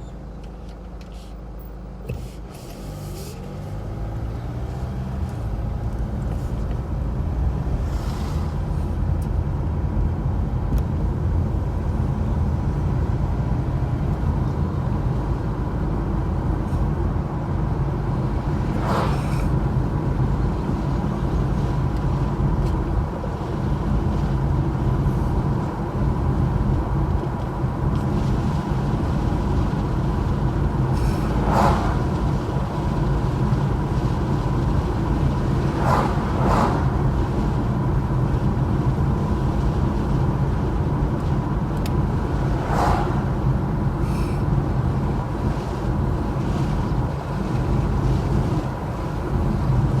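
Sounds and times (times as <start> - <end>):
engine rumbling: 0.0 - 50.0.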